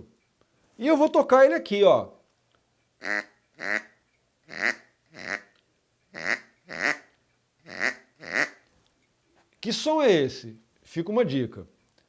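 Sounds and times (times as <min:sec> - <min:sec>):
duck call whistle: 0:04.5 - 0:05.5, 0:06.2 - 0:07.0, 0:07.7 - 0:08.6.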